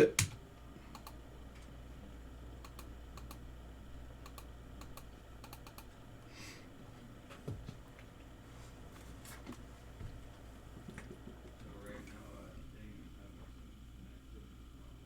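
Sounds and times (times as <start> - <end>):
faint typing on keyboard: 0.2 - 1.7, 4.2 - 6.0.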